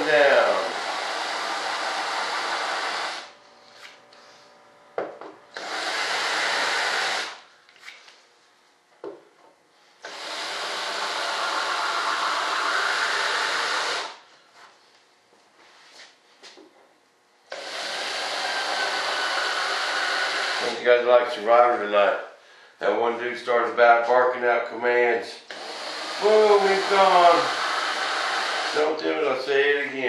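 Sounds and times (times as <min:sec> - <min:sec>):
electric blower hissing: 0:00.0 - 0:07.5, 0:10.0 - 0:14.3, 0:17.5 - 0:21.1, 0:25.3 - 0:30.0.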